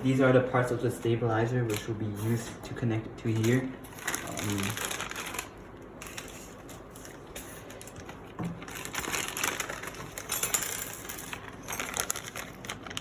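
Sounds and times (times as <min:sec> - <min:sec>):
plastic parts clicking and rattling: 0:03.3 - 0:13.0
rustling: 0:04.0 - 0:13.0.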